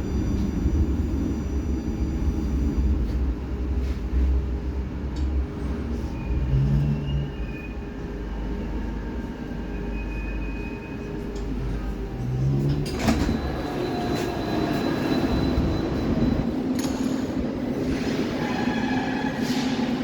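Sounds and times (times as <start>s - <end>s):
metro train rumbling: 0.0s - 20.0s.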